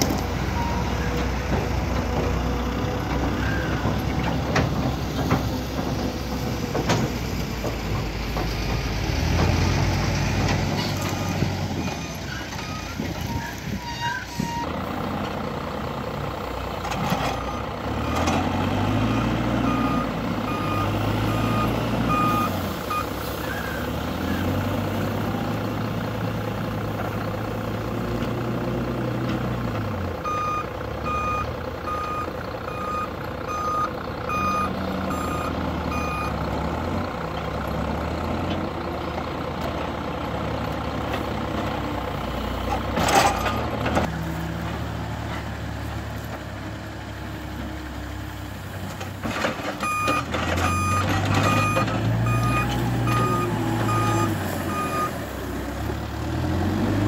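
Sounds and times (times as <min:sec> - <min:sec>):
diesel engine working under load: 0:00.0 - 0:57.0
reversing alarm beeping: 0:19.1 - 0:23.8, 0:30.2 - 0:36.4, 0:49.8 - 0:55.2.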